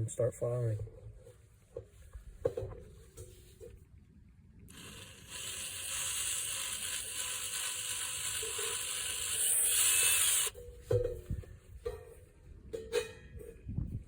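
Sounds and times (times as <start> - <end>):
drill grinding through cymbal: 4.7 - 10.6.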